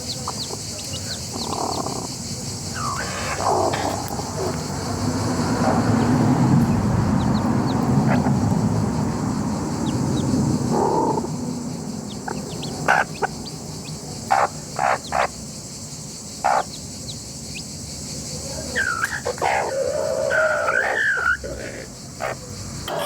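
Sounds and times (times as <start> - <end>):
chickens clucking: 0.0 - 23.0
low background rumble: 2.2 - 14.2.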